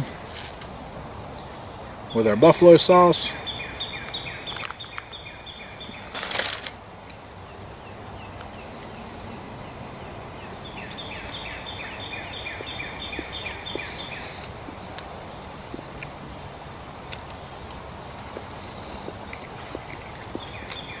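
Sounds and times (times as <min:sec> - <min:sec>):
loud rustle: 0:06.0 - 0:07.4.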